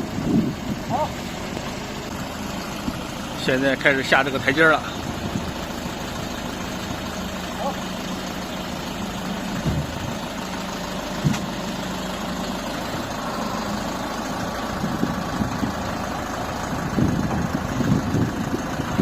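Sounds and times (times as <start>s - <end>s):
tractor engine running slowly: 0.0s - 19.0s
low uneven thuds: 9.5s - 10.2s, 11.1s - 11.7s.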